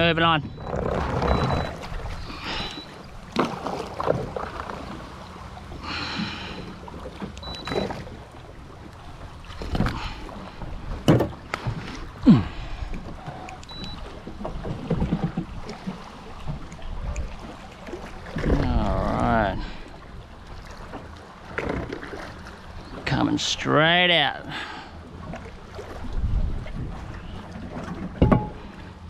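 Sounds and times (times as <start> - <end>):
water sloshing and splashing: 0.0 - 29.0
knocks: 28.2 - 28.6.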